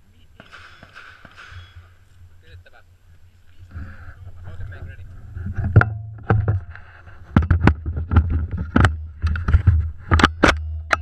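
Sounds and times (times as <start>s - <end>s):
low rumble on microphone: 3.6s - 11.0s
sharp knocks and clatters: 5.4s - 11.0s.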